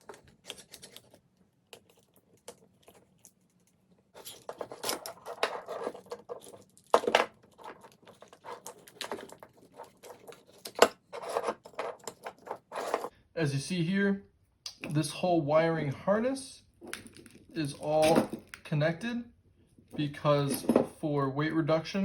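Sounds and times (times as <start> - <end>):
rustling and clattering parts: 0.0 - 13.1, 16.7 - 18.7, 19.7 - 21.2.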